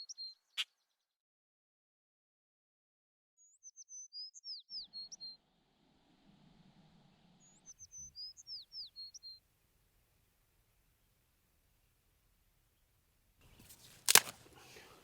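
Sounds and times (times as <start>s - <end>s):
songbird singing: 0.0s - 0.8s, 3.4s - 9.8s.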